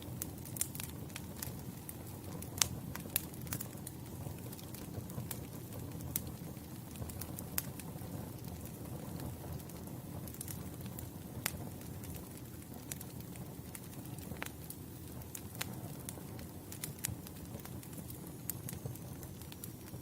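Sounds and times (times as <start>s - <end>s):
flames rumbling: 0.0s - 20.0s
wood crackling and popping: 0.0s - 20.0s.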